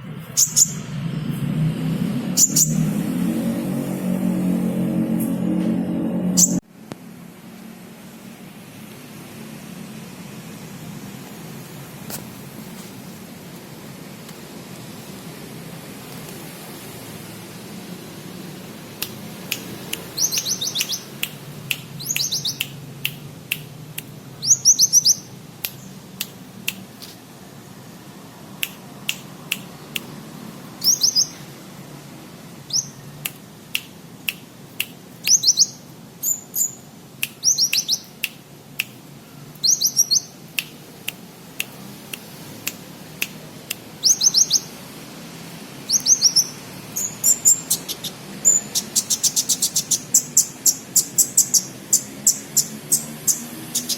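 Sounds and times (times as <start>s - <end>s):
bird high thin chirps: 0.3s - 0.8s, 2.4s - 2.8s, 6.4s - 6.6s, 19.0s - 27.0s, 30.8s - 31.4s, 32.7s - 33.0s, 33.8s - 41.8s, 42.7s - 44.8s, 45.8s - 53.9s
bird sharp ticks: 19.0s - 27.2s, 28.6s - 30.2s, 32.7s - 35.7s, 37.2s - 44.6s.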